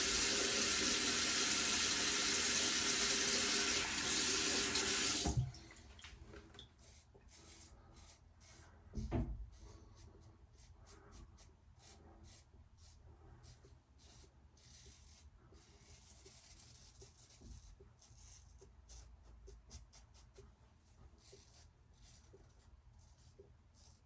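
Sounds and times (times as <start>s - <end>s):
tap running into sink: 3.7s - 6.1s
low thump: 9.0s - 9.4s.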